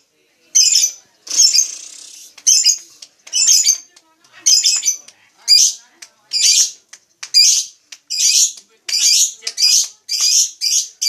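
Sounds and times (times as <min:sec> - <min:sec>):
lovebird shrill chirps: 0:00.5 - 0:11.0.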